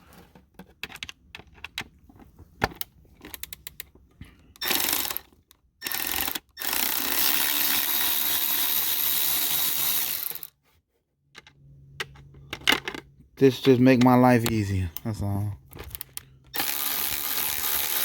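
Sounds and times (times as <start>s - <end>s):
clicks of handling parts: 0.1s - 4.7s, 11.3s - 16.6s
cordless drill running: 4.6s - 5.2s, 5.8s - 10.5s, 16.5s - 18.0s.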